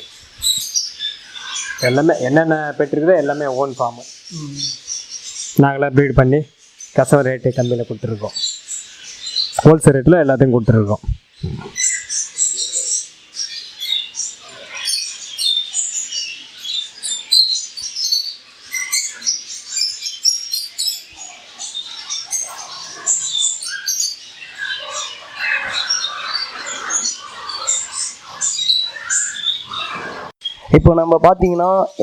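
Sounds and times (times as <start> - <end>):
small birds chirping: 0.0 - 32.0.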